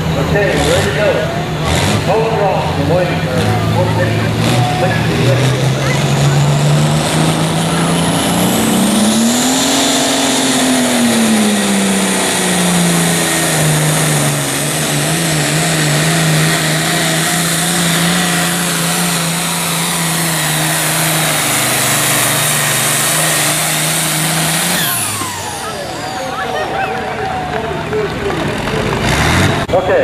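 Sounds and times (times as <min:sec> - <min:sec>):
diesel tractor engine under load: 0:00.0 - 0:30.0
turbo whine: 0:07.3 - 0:27.0.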